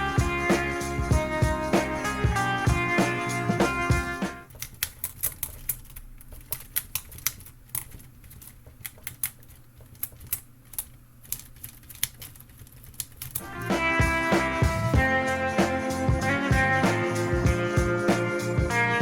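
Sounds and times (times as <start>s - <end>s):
typewriter keys clacking: 4.5s - 13.5s.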